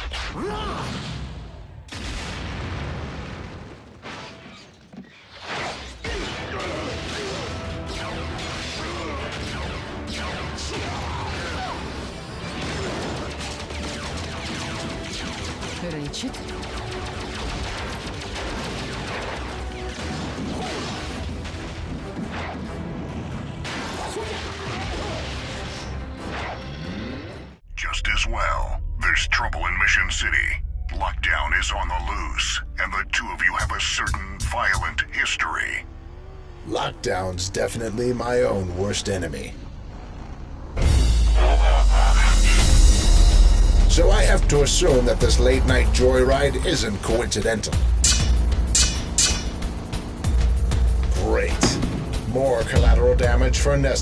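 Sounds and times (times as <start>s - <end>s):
action soundtrack music: 0.0s - 2.2s, 3.6s - 54.0s
booms and impacts: 0.0s - 4.6s, 50.6s - 53.7s.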